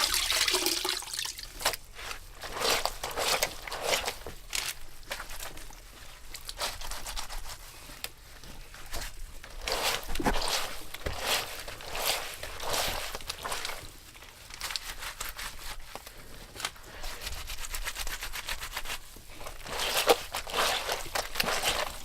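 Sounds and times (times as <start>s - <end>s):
fabric scrubbed by hand: 1.9s - 4.4s, 8.9s - 13.9s, 16.9s - 22.0s.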